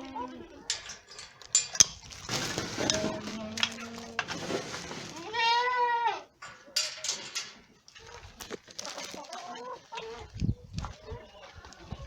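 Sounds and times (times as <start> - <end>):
sharp clicks and knocks: 0.7 - 4.3
goat bleating: 5.1 - 6.4.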